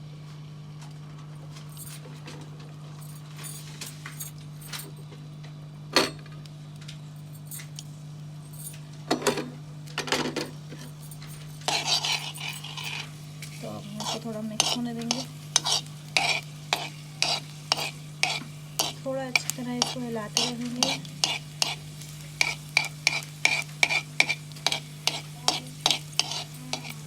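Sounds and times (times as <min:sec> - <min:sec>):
steady low hum: 0:00.0 - 0:27.0
metal spoon clinking on pan: 0:14.0 - 0:21.8, 0:22.4 - 0:27.0.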